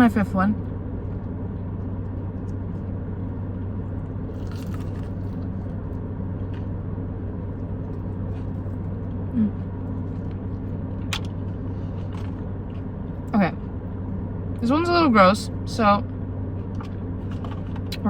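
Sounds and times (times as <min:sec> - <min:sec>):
car engine idling: 0:00.0 - 0:18.0
faint chewing: 0:01.1 - 0:06.8, 0:07.4 - 0:13.7.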